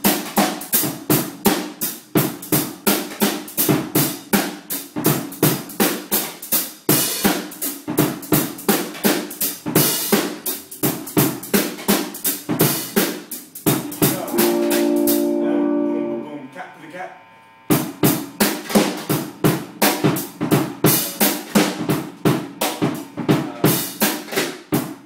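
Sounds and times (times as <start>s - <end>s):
drum kit playing a groove: 0.0s - 16.2s, 17.7s - 25.0s
cymbal crash: 13.7s - 24.4s
sustained chord: 13.8s - 18.4s.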